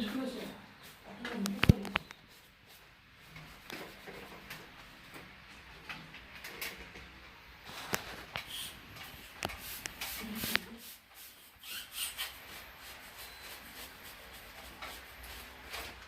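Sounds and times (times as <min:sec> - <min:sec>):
rubbing and scraping: 0:07.6 - 0:16.0.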